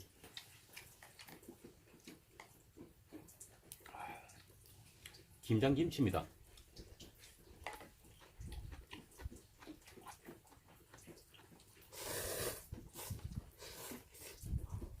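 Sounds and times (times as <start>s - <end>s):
clicking and chewing: 0.0s - 15.0s
breathy slurp of noodles: 11.9s - 14.6s.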